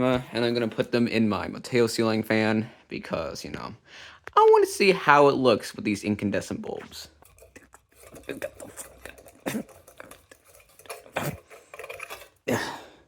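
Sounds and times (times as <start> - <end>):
glass and metal clinking: 7.2 - 12.8.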